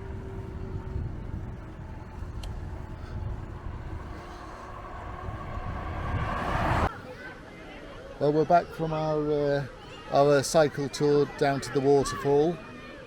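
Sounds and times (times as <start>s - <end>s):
road vehicle approaching: 0.0s - 6.9s.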